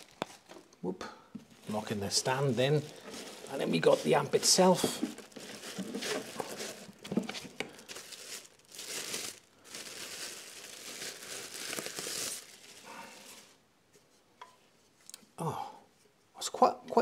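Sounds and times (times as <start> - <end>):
packaging crinkling and rustling: 0.0 - 0.8, 1.4 - 13.6.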